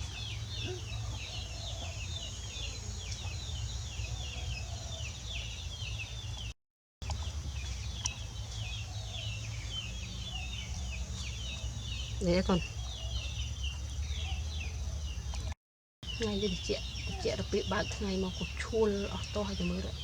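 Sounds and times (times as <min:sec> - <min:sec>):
bird chirping: 0:00.0 - 0:20.0.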